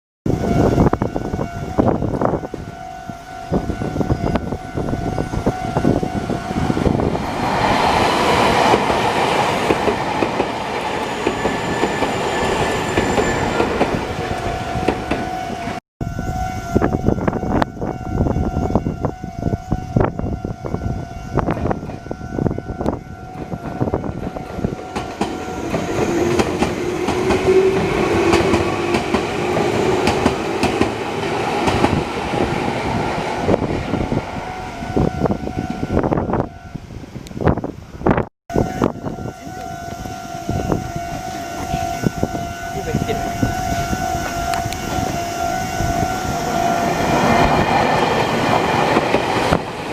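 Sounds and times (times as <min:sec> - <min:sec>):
train wheels clattering: 0:24.2 - 0:32.5
level crossing alarm ringing: 0:38.5 - 0:49.8.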